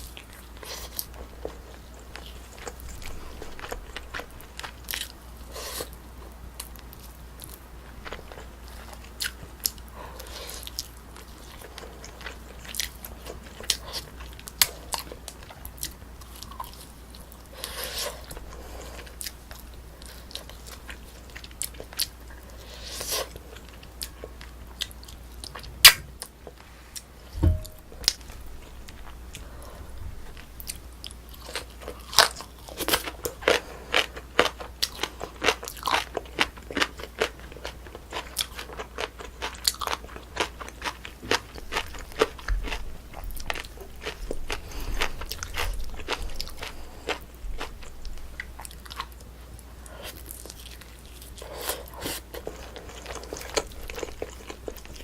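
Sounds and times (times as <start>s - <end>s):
chewing and biting food: 0.0s - 29.6s, 30.2s - 55.0s
knock with low thud: 27.4s - 27.8s.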